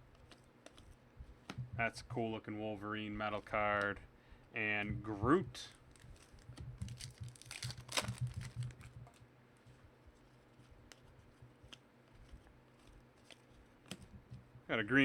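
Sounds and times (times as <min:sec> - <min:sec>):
card packaging rustling and crinkling: 0:05.3 - 0:14.2.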